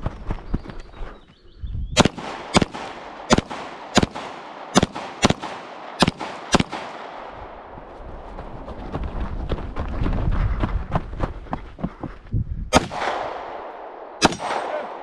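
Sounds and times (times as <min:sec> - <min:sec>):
pistol shots with echo: 0:02.0 - 0:07.4, 0:12.7 - 0:15.0.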